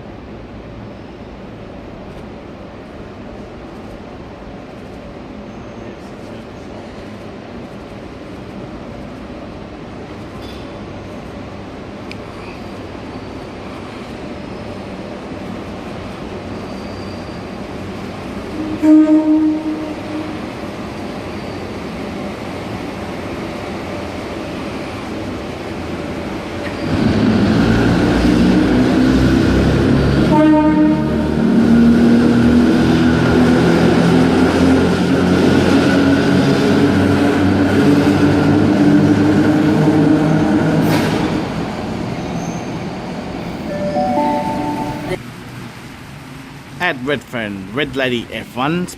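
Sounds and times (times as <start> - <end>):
train rumbling past: 0.0 - 48.9
train horn blast: 18.5 - 20.5, 30.2 - 31.4, 43.7 - 45.2.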